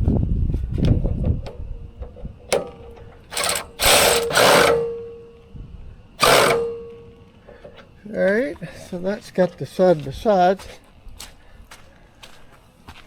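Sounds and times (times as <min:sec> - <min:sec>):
fast mechanical rattle: 0:00.8 - 0:05.4, 0:06.2 - 0:07.9
sharp click: 0:00.8 - 0:05.4, 0:06.2 - 0:07.9
loud scraping metal clanks: 0:00.8 - 0:05.5, 0:06.2 - 0:08.0
metal ringing: 0:00.9 - 0:08.0.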